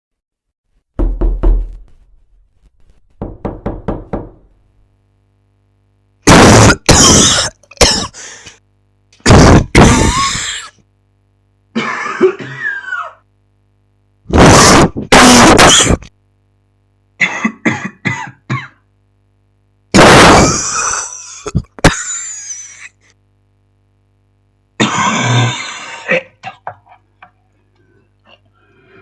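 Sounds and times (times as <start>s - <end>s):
person coughing: 6.3s - 8.6s, 9.2s - 10.8s, 11.8s - 13.2s, 14.4s - 16.1s, 17.2s - 18.8s, 20.0s - 23.0s, 24.8s - 27.0s
throat clearing: 11.8s - 13.2s, 17.2s - 18.8s, 24.8s - 26.8s.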